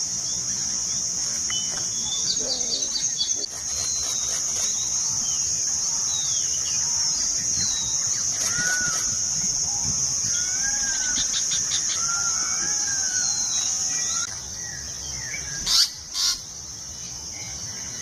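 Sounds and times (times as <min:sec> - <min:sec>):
high-pitched insect drone: 0:00.0 - 0:14.8
flycatchers chirping: 0:00.0 - 0:18.0
rattle of ticks: 0:00.4 - 0:12.0.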